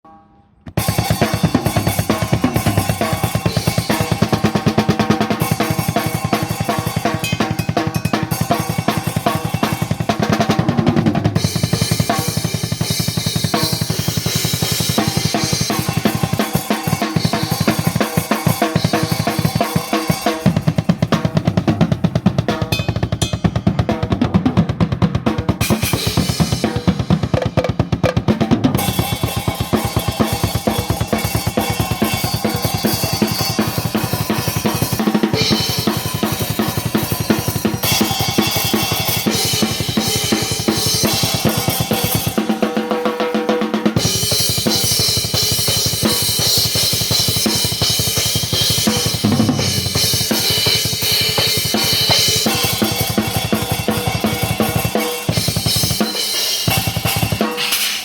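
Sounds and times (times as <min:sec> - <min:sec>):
cymbals ringing: 0:22.6 - 0:23.8, 0:28.8 - 0:42.6, 0:44.0 - 0:58.0
bass drum strokes: 0:49.2 - 0:50.7.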